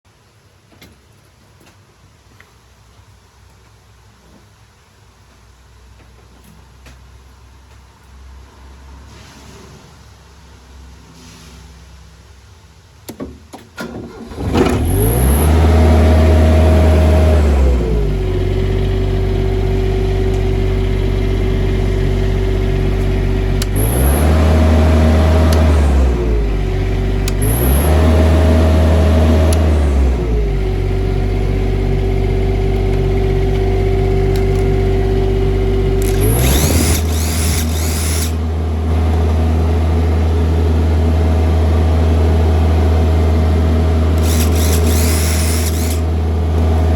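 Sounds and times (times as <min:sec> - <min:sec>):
brief hiss: 0:09.0 - 0:10.2, 0:11.0 - 0:12.1
welder engine running: 0:14.8 - 0:46.9
starter clicks: 0:36.0 - 0:38.4, 0:44.2 - 0:46.1.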